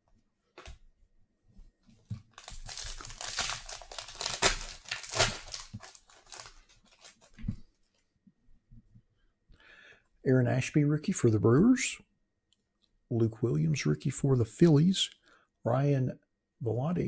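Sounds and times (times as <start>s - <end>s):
foil wrapper tearing and crinkling: 2.3s - 7.4s.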